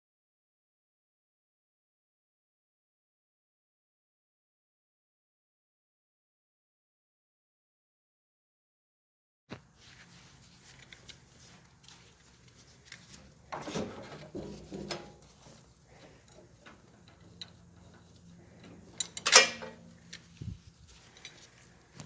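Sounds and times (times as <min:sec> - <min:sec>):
loud metallic clank: 0:19.1 - 0:19.9.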